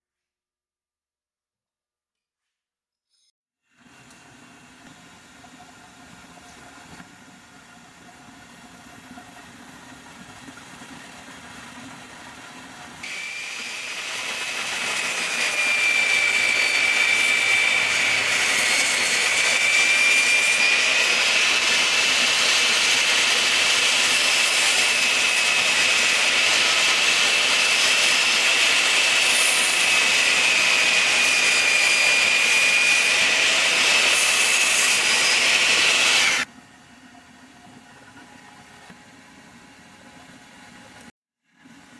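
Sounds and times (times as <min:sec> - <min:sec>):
power tool motor whine: 0:13.0 - 0:36.5.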